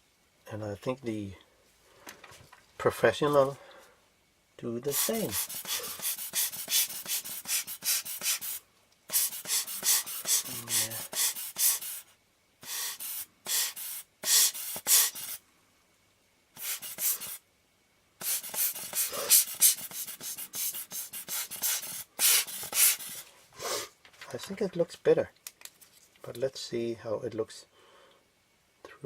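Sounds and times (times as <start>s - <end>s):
tissue wiping glass lens: 4.9s - 12.1s, 12.7s - 15.4s, 16.6s - 17.4s, 18.2s - 23.3s.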